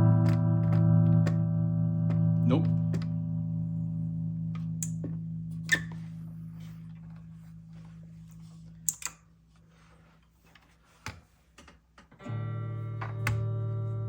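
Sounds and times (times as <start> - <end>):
electric guitar chord ringing: 0.0 - 5.6, 12.2 - 14.0.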